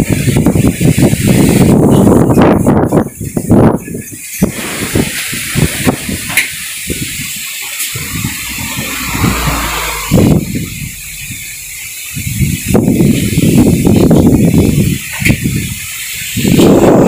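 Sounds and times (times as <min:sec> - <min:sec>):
wind gusts buffeting microphone: 0:00.0 - 0:17.0
strong wind whooshing: 0:06.9 - 0:15.0.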